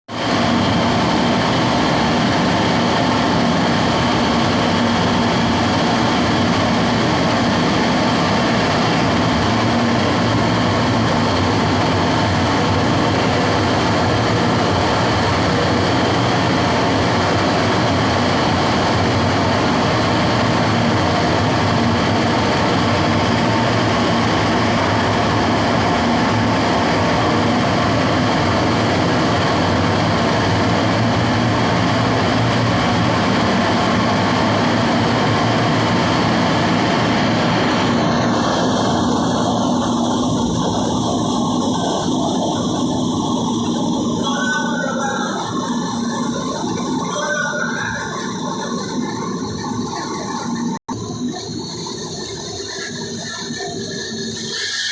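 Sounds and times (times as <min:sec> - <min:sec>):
furnace burner rushing: 0:00.1 - 0:54.9
faint hum: 0:00.2 - 0:54.9.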